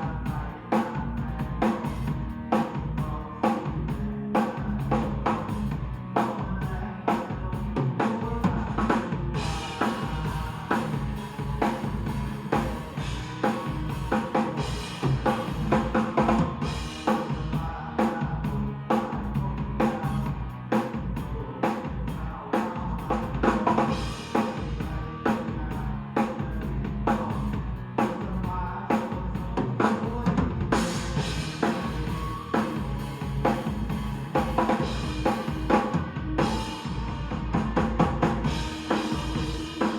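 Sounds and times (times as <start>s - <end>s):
backing music: 0.0s - 39.9s
drum kit groove: 0.0s - 39.9s.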